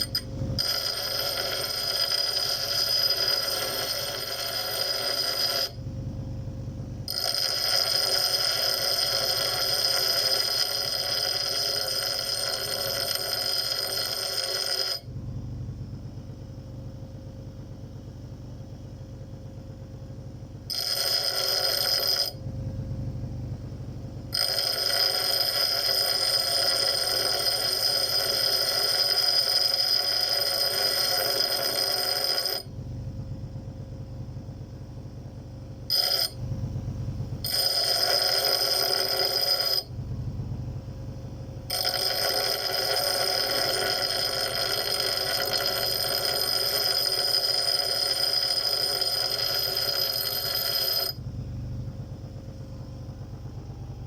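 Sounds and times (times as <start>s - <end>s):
small engine pulsing: 0.0s - 5.8s, 7.0s - 15.7s, 20.7s - 32.9s, 35.8s - 54.0s
high steady whine: 0.0s - 6.1s, 35.7s - 54.0s.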